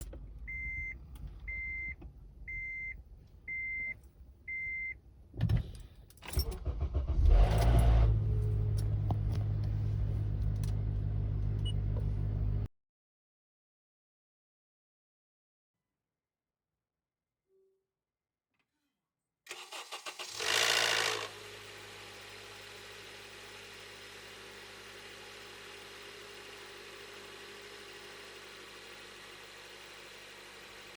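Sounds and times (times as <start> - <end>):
car engine cranking and starting: 5.6 - 12.7, 19.5 - 30.9
engine start-up noise burst: 6.4 - 8.3, 19.5 - 21.2
car engine idling: 8.1 - 12.7
starter motor cranking: 19.5 - 21.4.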